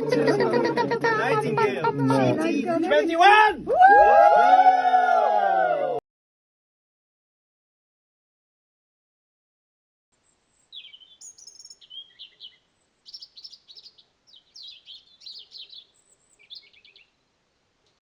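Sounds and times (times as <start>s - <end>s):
songbird singing: 10.2s - 18.0s.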